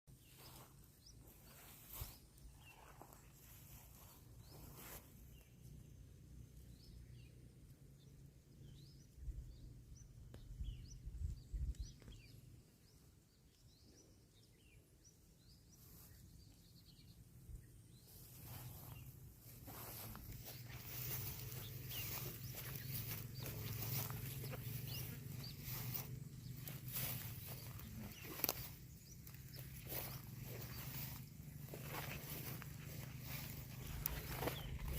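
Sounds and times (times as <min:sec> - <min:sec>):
faint bird chirps: 0:15.4 - 0:34.9.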